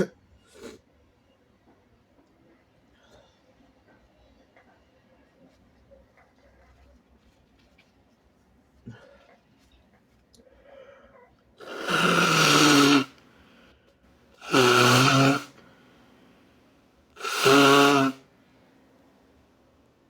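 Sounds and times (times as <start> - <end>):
person blowing nose: 11.6 - 13.1, 14.4 - 15.6, 17.2 - 18.2.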